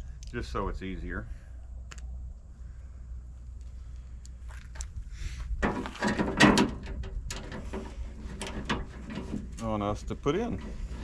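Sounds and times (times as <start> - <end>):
hand tools clattering and clicking: 5.6 - 9.8.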